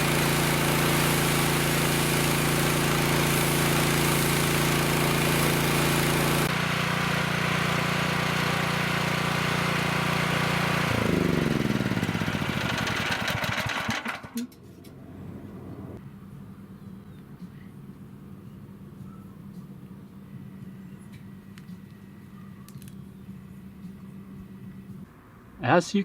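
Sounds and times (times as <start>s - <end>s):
hiss of spray: 0.0s - 6.5s
pressure washer engine running: 0.0s - 14.5s.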